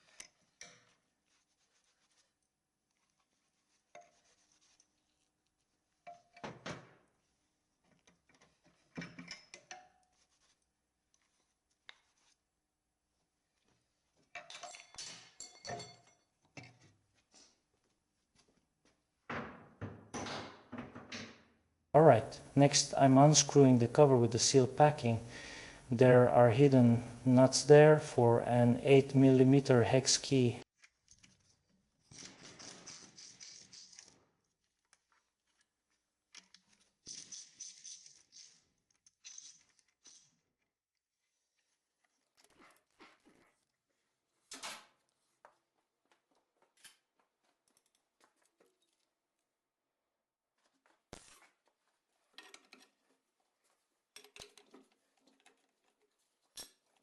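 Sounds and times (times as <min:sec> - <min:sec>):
metal parts clinking and clattering: 0:14.4 - 0:16.2.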